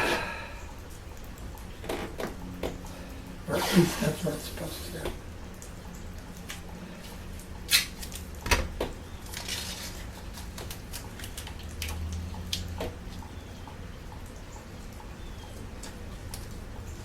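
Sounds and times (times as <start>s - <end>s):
tape peeling rustle: 6.4s - 12.8s.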